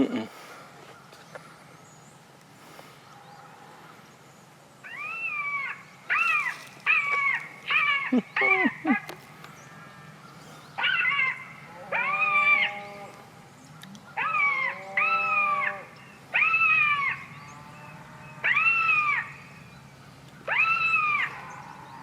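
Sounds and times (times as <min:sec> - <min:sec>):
animal wailing distress cries: 0:10.8 - 0:13.2, 0:14.2 - 0:19.4, 0:20.5 - 0:22.0.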